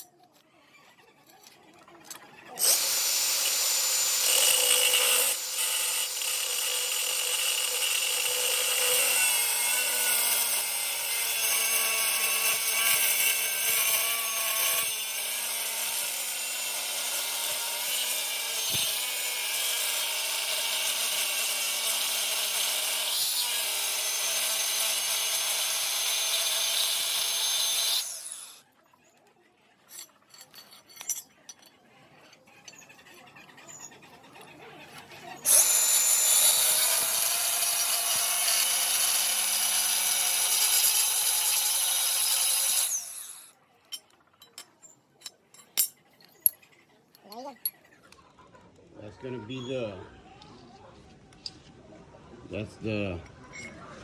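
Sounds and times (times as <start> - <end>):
power tool grinding steel: 2.1 - 28.6, 35.3 - 43.6.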